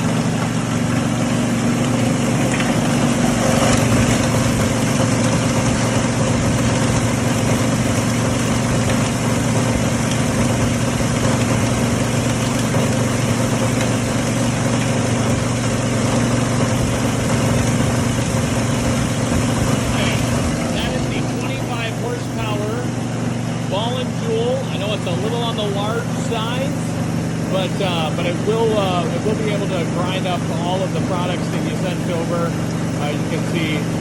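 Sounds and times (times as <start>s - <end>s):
granulator humming and grinding: 0.0s - 34.0s.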